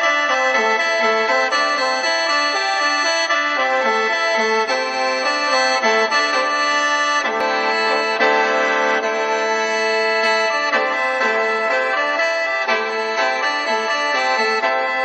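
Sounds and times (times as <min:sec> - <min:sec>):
mouth organ melody over drone: 0:07.2 - 0:15.0.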